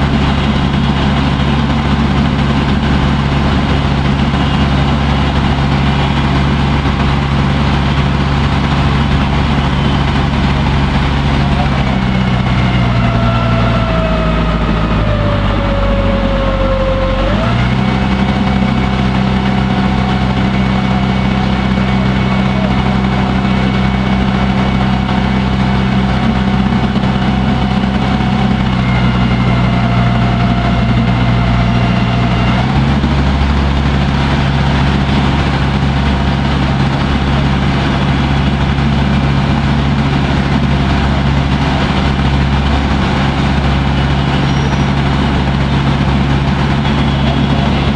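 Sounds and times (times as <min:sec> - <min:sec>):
boat engine running: 0:00.0 - 0:47.9.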